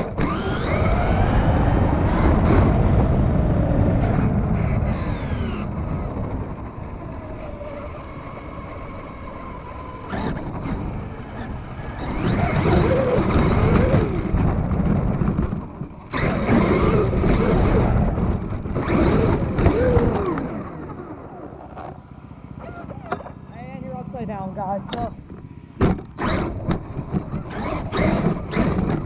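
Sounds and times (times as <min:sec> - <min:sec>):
remote control car motor whining: 0:00.0 - 0:01.5, 0:04.0 - 0:21.1, 0:22.6 - 0:23.3, 0:26.0 - 0:29.0
rough rumbling noise: 0:00.0 - 0:29.0.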